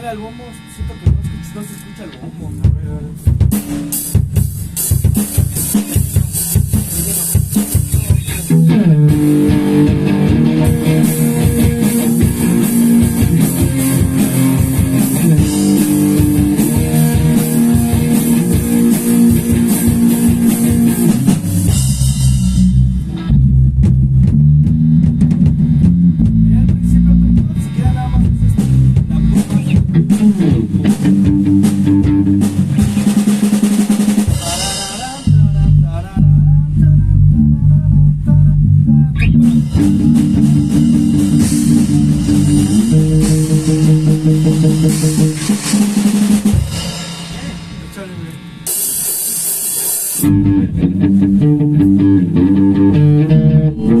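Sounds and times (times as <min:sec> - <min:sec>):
electric guitar: 0:00.0 - 0:47.6, 0:48.7 - 0:54.0
bass guitar: 0:00.0 - 0:48.4, 0:50.2 - 0:54.0
drum kit: 0:00.0 - 0:54.0
cymbals: 0:02.8 - 0:23.4, 0:26.9 - 0:36.0, 0:39.2 - 0:51.1.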